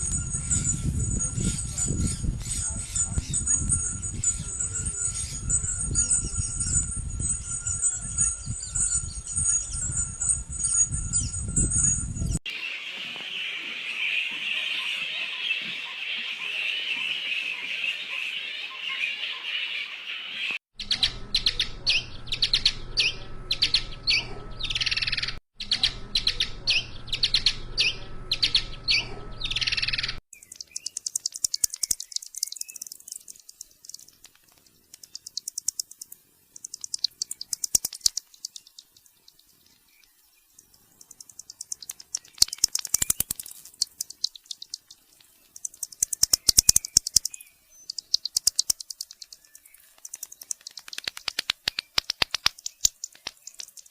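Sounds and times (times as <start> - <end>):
rapid high bat clicking: 30.7 - 38.6, 41.0 - 44.9, 45.5 - 53.9
bat squeaks: 45.6 - 51.0.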